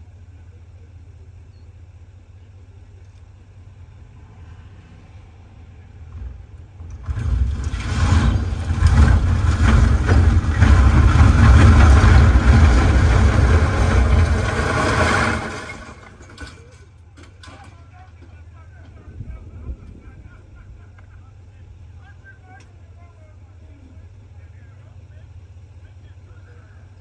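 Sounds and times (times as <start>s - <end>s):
excavator engine hum: 0.0s - 27.0s
concrete silo collapsing: 6.2s - 21.4s.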